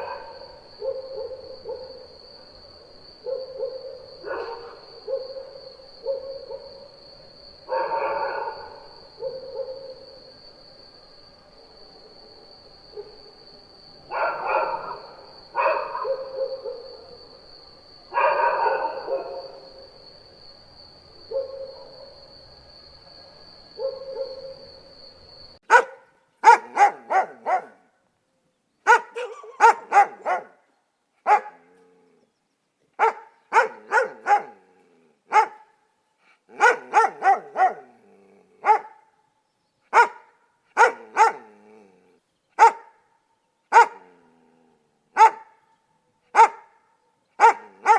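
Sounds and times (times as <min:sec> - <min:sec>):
dog barking: 0:00.0 - 0:02.1, 0:03.2 - 0:06.8, 0:07.7 - 0:10.0, 0:14.1 - 0:17.1, 0:18.1 - 0:19.6, 0:21.3 - 0:22.2, 0:23.8 - 0:24.6, 0:25.6 - 0:27.9, 0:28.8 - 0:30.6, 0:31.2 - 0:31.8, 0:33.0 - 0:34.7, 0:35.3 - 0:35.8, 0:36.5 - 0:39.1, 0:39.9 - 0:42.0, 0:42.6 - 0:43.1, 0:43.7 - 0:44.2, 0:45.1 - 0:45.6, 0:46.2 - 0:47.9.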